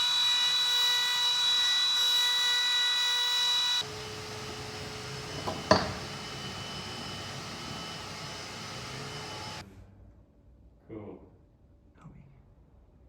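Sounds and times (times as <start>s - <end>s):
power tool whine: 0.0s - 9.6s
machine hum: 3.8s - 9.6s.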